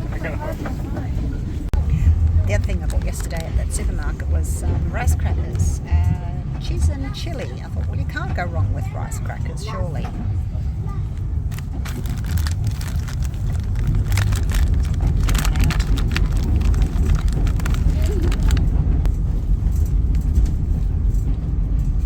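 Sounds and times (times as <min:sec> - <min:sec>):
train carriage rumbling: 0:00.0 - 0:22.0
snack packet crackling: 0:11.5 - 0:18.7.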